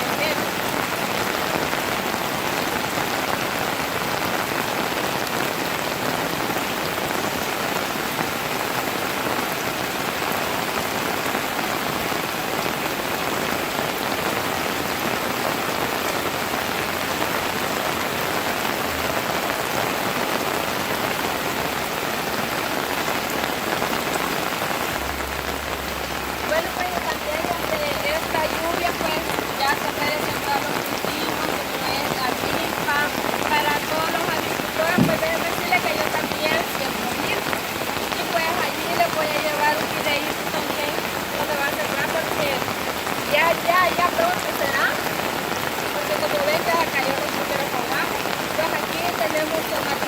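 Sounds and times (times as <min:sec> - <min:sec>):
heavy rain falling: 0:00.0 - 0:50.0
rainwater pouring off roof: 0:00.0 - 0:50.0.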